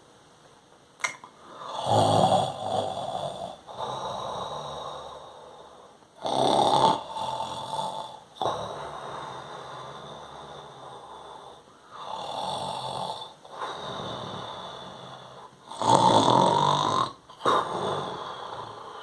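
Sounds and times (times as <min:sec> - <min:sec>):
man snoring loudly: 0:01.6 - 0:05.2, 0:06.2 - 0:09.4, 0:12.0 - 0:18.9.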